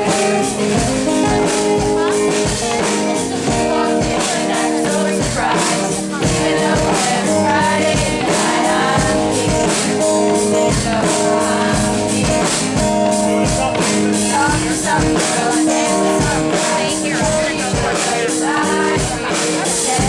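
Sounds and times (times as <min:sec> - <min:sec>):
person singing: 0:00.0 - 0:20.0
rock band playing: 0:00.0 - 0:20.0.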